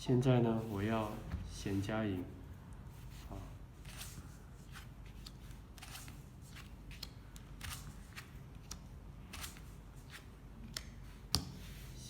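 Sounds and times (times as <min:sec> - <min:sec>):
playing cards swishing and snapping: 0:03.8 - 0:11.9.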